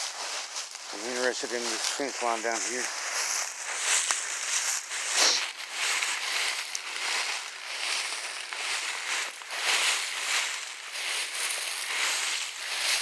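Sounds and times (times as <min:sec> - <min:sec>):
footsteps crunching dry leaves: 0:00.0 - 0:13.0.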